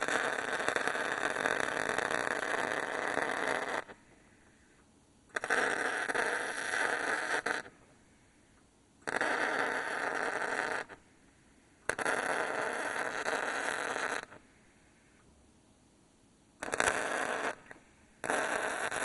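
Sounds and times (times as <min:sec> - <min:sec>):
welder crackling and spattering: 0:00.0 - 0:04.0, 0:05.3 - 0:07.7, 0:09.0 - 0:11.0, 0:11.9 - 0:14.4, 0:16.6 - 0:19.0.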